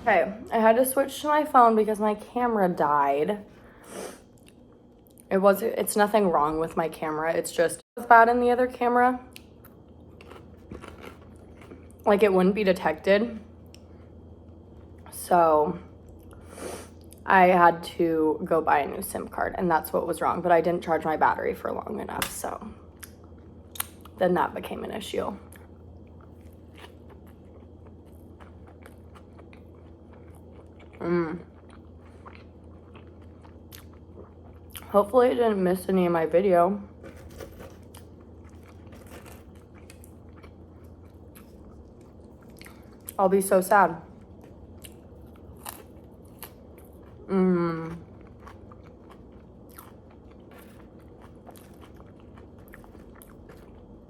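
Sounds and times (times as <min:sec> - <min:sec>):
voiced hum: 0:00.0 - 0:54.0
chewing and biting food: 0:09.3 - 0:12.0, 0:25.5 - 0:34.9, 0:37.0 - 0:43.2, 0:44.1 - 0:47.3, 0:47.9 - 0:54.0.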